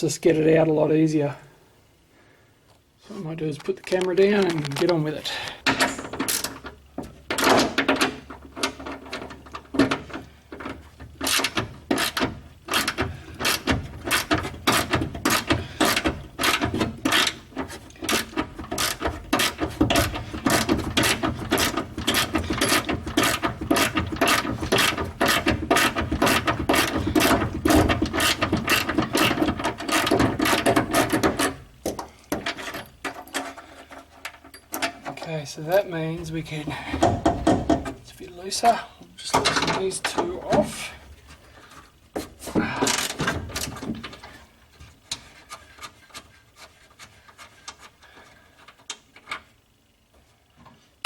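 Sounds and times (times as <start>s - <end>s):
hand ratchet clicking: 7.3s - 35.0s.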